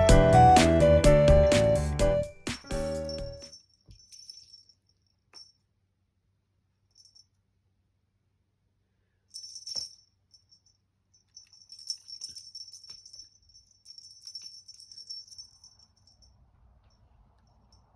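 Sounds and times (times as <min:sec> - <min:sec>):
small bell jingling: 0:02.6 - 0:05.6, 0:06.9 - 0:07.4, 0:09.3 - 0:17.9.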